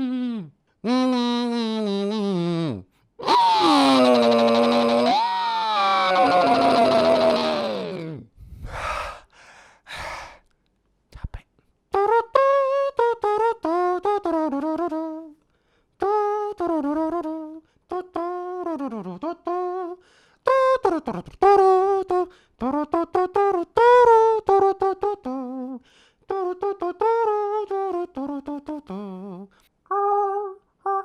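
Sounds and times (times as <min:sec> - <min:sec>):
man imitating a brass horn: 0:00.0 - 0:05.2.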